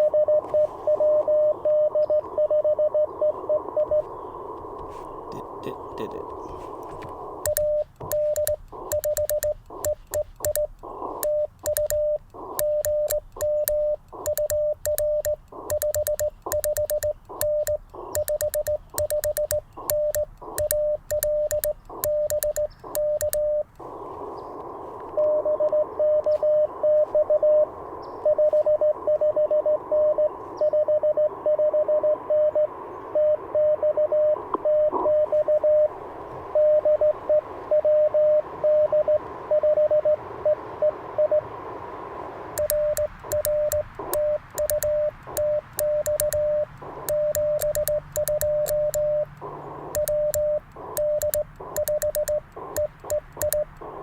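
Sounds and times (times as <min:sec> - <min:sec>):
radio band hiss: 0:03.4 - 0:30.5, 0:41.7 - 0:54.0
higher answering morse code: 0:05.4 - 0:24.2, 0:42.6 - 0:54.0
morse code tone: 0:07.4 - 0:23.8, 0:42.6 - 0:54.0
morse key clicks: 0:07.4 - 0:23.8, 0:42.6 - 0:54.0.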